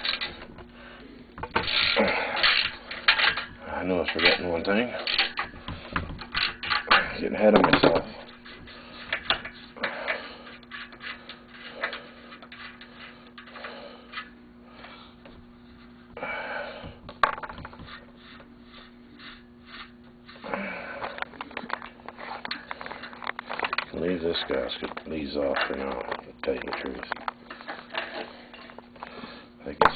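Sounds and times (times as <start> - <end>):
steady low hum: 0.0 - 29.9
clicks knocks and scrapes of hand work: 16.8 - 29.2.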